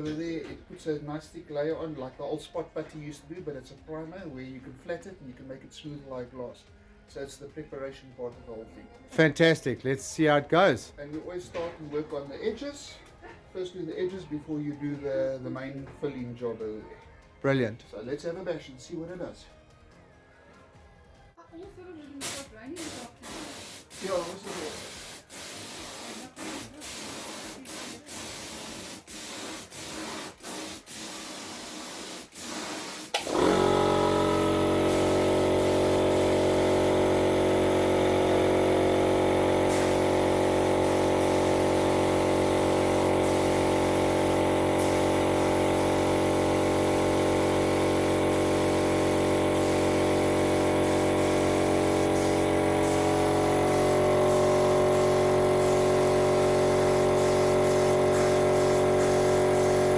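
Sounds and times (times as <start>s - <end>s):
air compressor motor humming: 22.2s - 59.9s
spray gun hissing: 22.2s - 59.9s.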